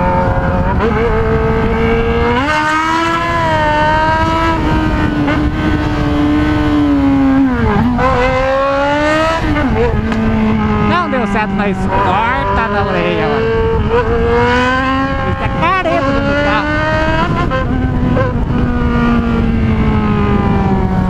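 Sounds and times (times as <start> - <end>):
loud motorcycle engine revving: 0.0 - 21.0.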